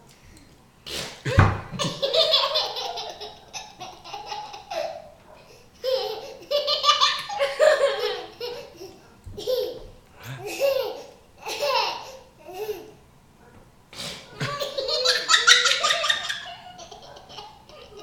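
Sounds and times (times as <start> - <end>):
girl laughing: 1.3 - 5.1, 5.8 - 12.9, 14.3 - 18.0
girl blowing raspberry: 10.2 - 10.6.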